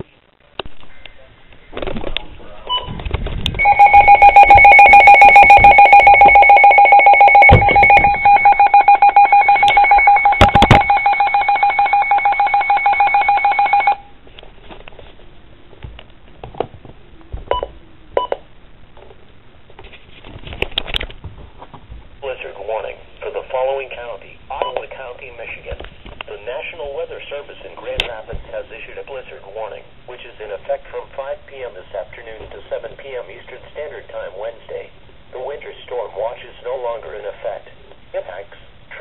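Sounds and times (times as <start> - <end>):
faint radio hiss: 0.0 - 11.0, 13.2 - 39.0
pulsing weather radio alert tone: 3.6 - 14.0.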